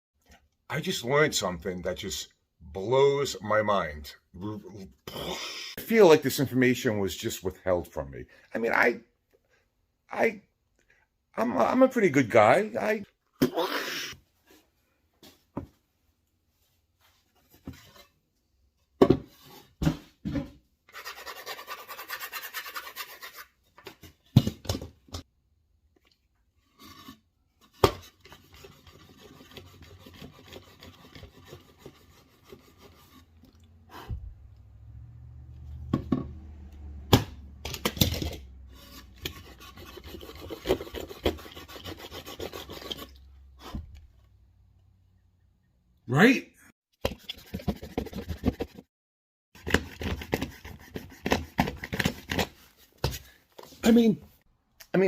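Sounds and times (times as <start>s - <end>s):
rasping on wood: 28.3s - 33.3s, 38.8s - 43.1s.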